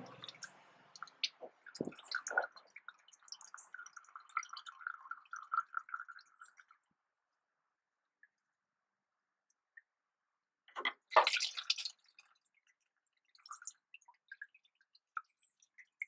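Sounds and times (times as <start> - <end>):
oil dripping into pan: 0.1 - 6.7.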